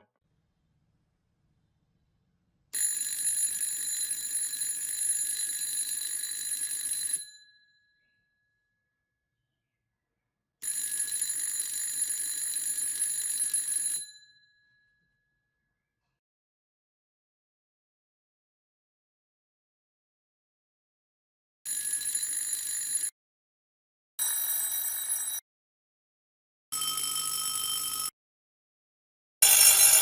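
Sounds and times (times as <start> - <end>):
electric bell ringing: 29.4 - 30.0.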